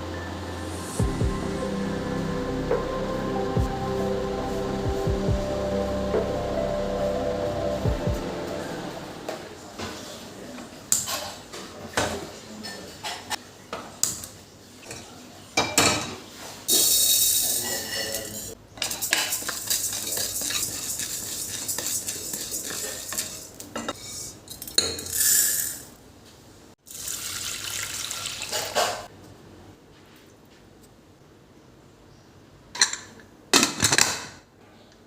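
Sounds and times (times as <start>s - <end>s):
dishes and utensils clattering: 14.8s - 25.8s, 28.5s - 29.1s
water running: 26.9s - 29.1s.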